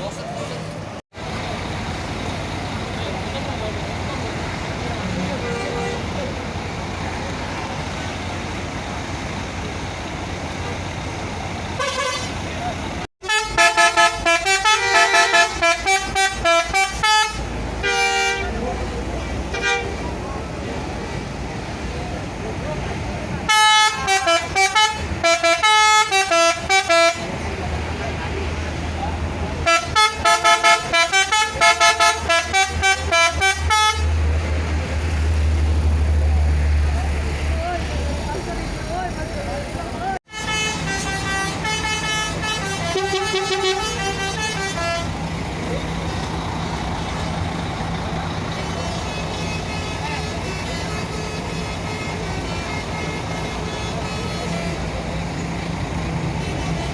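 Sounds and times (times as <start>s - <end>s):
low engine rumble: 0.0s - 56.9s
road traffic noise: 0.0s - 56.9s
bus musical horn tune: 5.2s - 6.2s, 11.8s - 12.4s, 13.2s - 18.6s, 19.5s - 20.0s, 23.4s - 27.4s, 29.6s - 34.2s, 40.2s - 45.2s, 48.6s - 55.1s.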